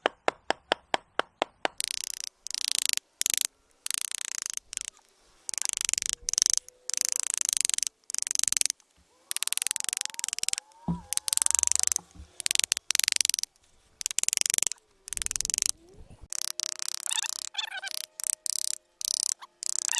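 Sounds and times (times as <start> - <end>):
sharp tapping of carving tools: 0.0 - 15.8
carving tools scraping wood: 1.8 - 19.9.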